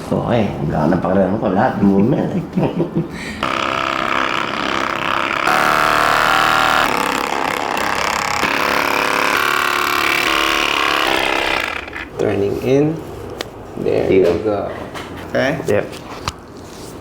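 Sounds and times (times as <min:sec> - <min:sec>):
small motor running: 0:03.4 - 0:12.0.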